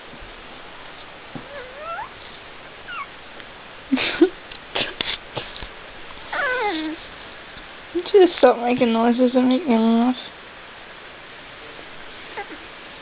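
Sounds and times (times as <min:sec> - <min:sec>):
puppies whining: 0:01.4 - 0:03.2, 0:06.3 - 0:07.0, 0:12.3 - 0:12.6
noisy puffs and clicks: 0:04.5 - 0:05.8.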